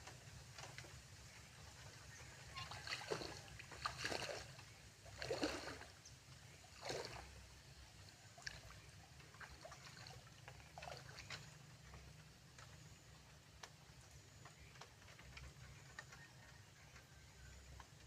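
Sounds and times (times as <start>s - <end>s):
water splashing: 2.4s - 6.0s, 6.7s - 12.0s.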